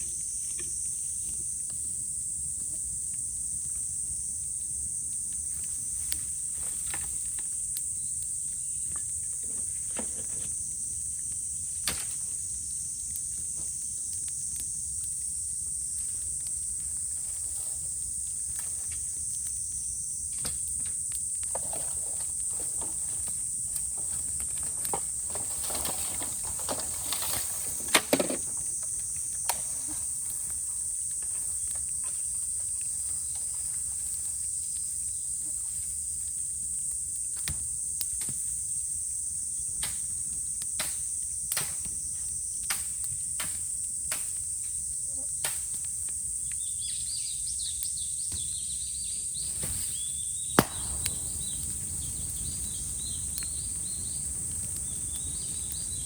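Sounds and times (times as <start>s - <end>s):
cicadas droning: 0.0s - 56.0s
crackling bamboo fire: 0.0s - 56.0s
rapid high chirping calls: 49.1s - 56.0s
loud cracks: 50.6s - 56.0s.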